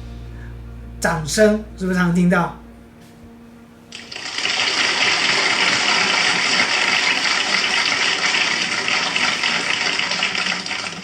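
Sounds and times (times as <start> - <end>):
crowd clapping: 4.0 - 11.0.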